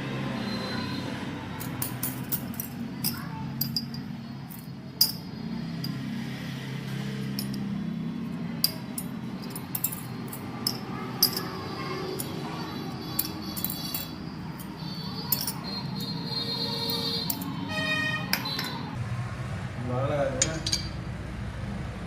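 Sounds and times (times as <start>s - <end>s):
metal tools clinking: 1.6s - 6.0s, 7.2s - 7.8s, 8.6s - 17.7s, 18.3s - 18.9s, 20.4s - 21.0s.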